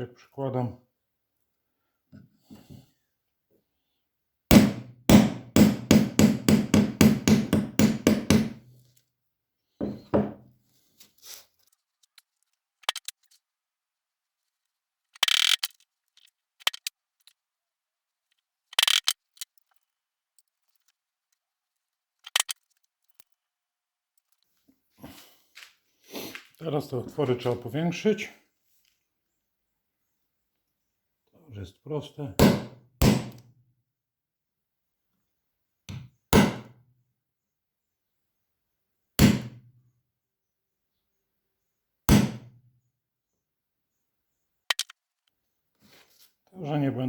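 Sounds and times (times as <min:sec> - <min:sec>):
hole punch cutting: 0:04.5 - 0:08.6.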